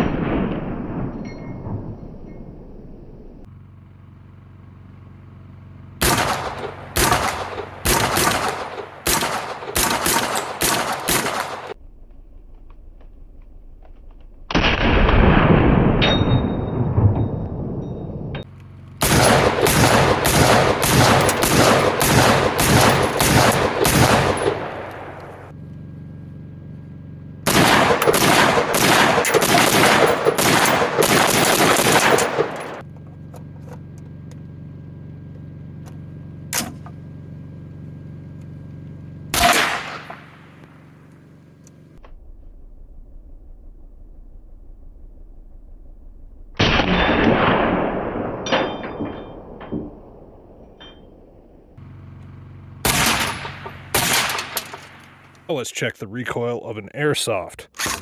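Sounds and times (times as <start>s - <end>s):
rifle gunshots: 6.0s - 11.8s, 19.0s - 25.5s, 27.5s - 32.8s, 39.3s - 40.9s, 46.6s - 50.7s, 52.8s - 55.4s
loud rumbling noise: 6.0s - 12.5s, 14.6s - 25.6s.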